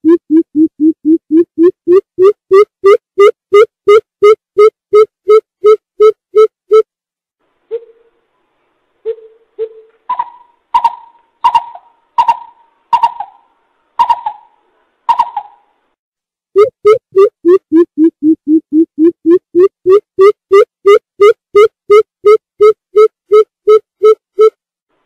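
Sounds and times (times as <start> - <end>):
bird hooting: 9.1 - 15.6.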